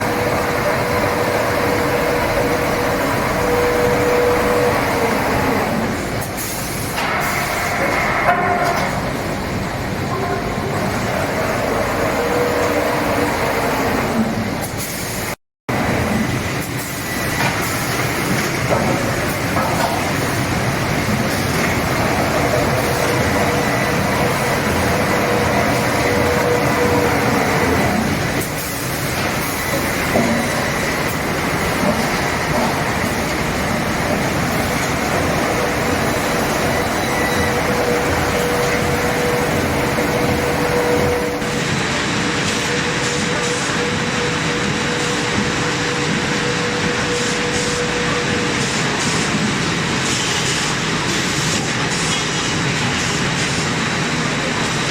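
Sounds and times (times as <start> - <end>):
steady hum: 20.4 - 42.1
veneer peeling lathe running: 20.6 - 28.5, 29.1 - 41.7.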